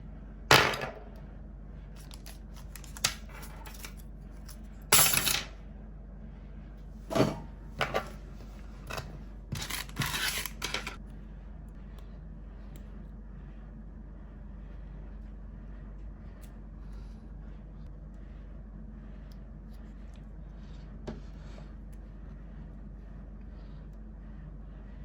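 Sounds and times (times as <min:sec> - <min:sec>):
low steady hum: 0:00.0 - 0:25.0
tools scraping: 0:02.0 - 0:05.5, 0:07.1 - 0:11.0.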